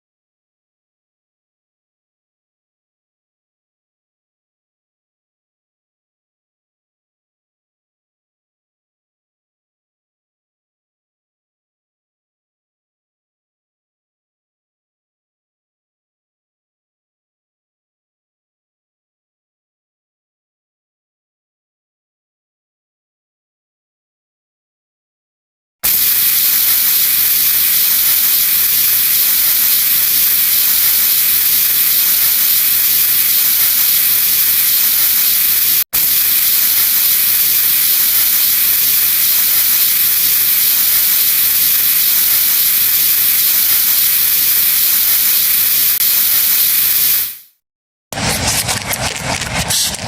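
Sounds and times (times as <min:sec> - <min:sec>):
pressurised spray hissing: 0:25.8 - 0:47.5.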